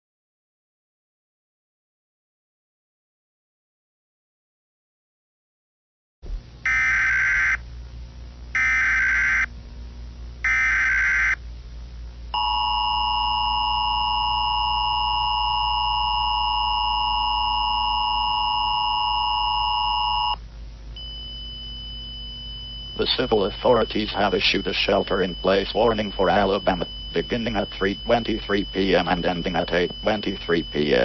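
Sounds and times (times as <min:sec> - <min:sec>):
buzzing data tone bursts: 0:06.6 - 0:07.6, 0:08.5 - 0:09.5, 0:10.4 - 0:11.4, 0:12.4 - 0:20.4, 0:21.0 - 0:31.0
two-tone attention alarm: 0:06.7 - 0:07.6, 0:08.6 - 0:09.5, 0:10.5 - 0:11.4, 0:12.4 - 0:20.4, 0:21.0 - 0:31.0.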